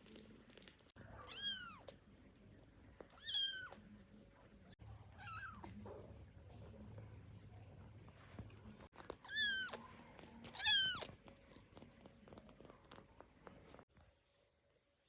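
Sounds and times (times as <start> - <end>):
kittens meowing: 1.2 - 1.9, 3.2 - 3.8, 9.2 - 11.2.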